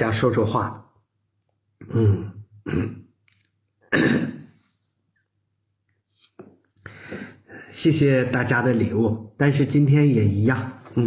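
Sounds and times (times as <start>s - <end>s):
man coughing: 1.8s - 3.2s, 3.9s - 4.6s.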